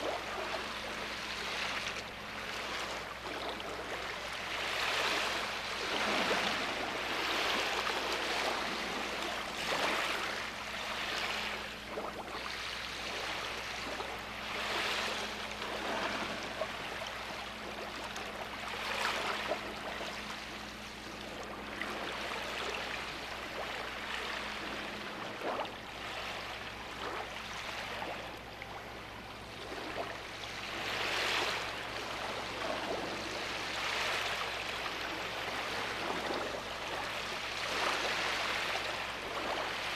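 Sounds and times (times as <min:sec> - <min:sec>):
sea waves washing onto shore: 0:00.0 - 0:28.2.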